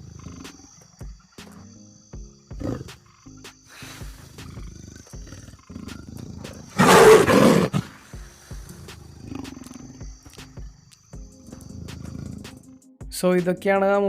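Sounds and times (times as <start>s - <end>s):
background music with steady beat: 0.0s - 14.0s
animal roar: 2.6s - 3.0s, 3.8s - 8.1s, 8.8s - 10.4s.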